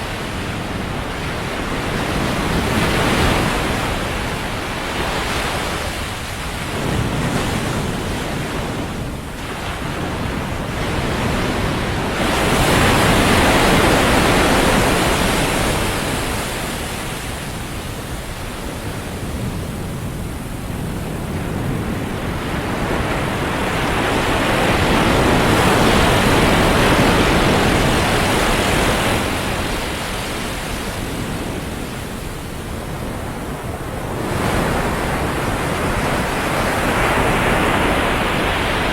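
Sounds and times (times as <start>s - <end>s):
ocean surf breaking on beach: 0.0s - 38.9s.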